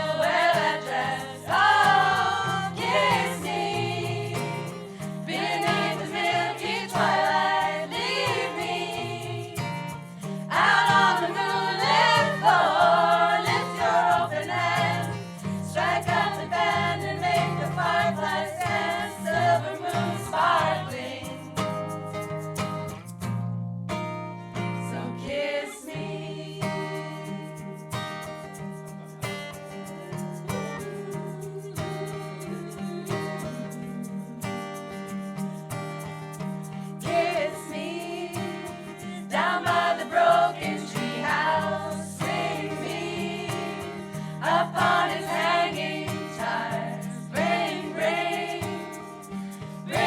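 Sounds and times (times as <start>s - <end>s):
group singing in harmony: 0.0s - 22.0s, 24.8s - 28.5s, 29.3s - 35.2s, 36.7s - 50.0s
acoustic guitar strumming: 0.0s - 50.0s
person singing: 29.9s - 34.4s.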